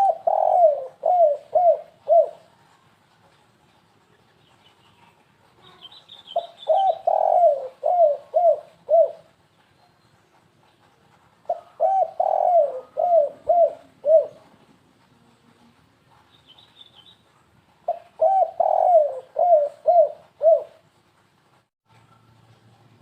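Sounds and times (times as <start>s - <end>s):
dove cooing: 0.0s - 2.6s, 5.7s - 9.4s, 11.4s - 14.6s, 17.9s - 20.8s.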